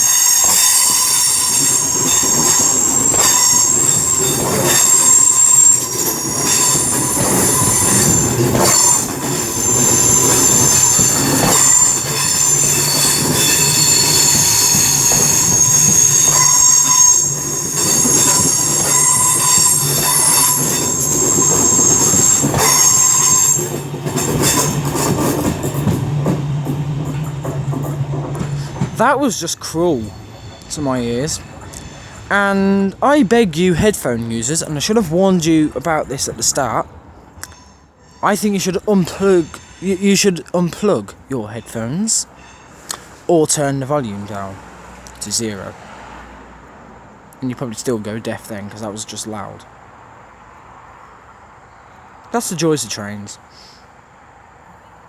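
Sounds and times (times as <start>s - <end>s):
wheels knocking over rail joints: 0.0s - 36.8s
train wheels squealing on rails: 0.0s - 47.4s, 53.4s - 54.0s.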